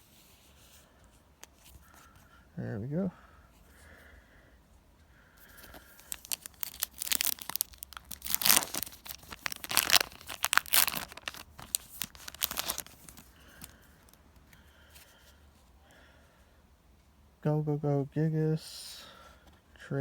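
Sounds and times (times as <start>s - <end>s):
foil wrapper tearing and crinkling: 5.8s - 14.2s.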